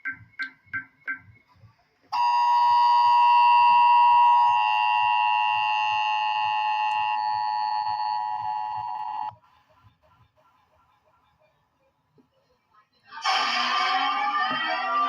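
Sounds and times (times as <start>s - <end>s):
steady multi-tone attention signal: 2.1s - 9.3s.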